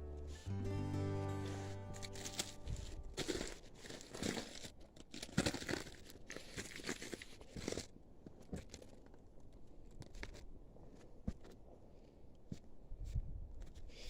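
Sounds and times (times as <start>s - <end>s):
footsteps crunching on loose rock: 2.0s - 9.2s.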